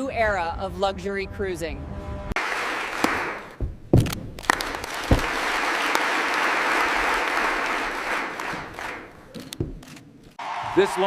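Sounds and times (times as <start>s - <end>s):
crowd applauding: 2.4s - 3.6s, 4.4s - 9.4s, 10.4s - 11.0s.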